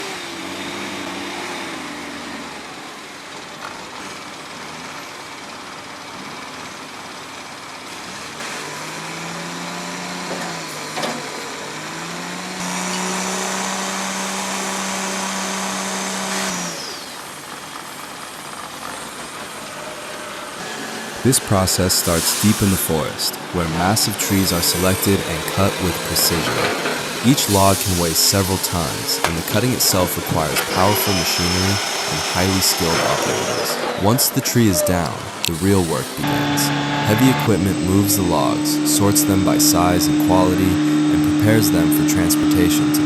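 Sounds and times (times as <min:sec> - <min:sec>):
heavy machinery motor hum: 0:00.2 - 0:43.0
high whine: 0:16.8 - 0:43.0.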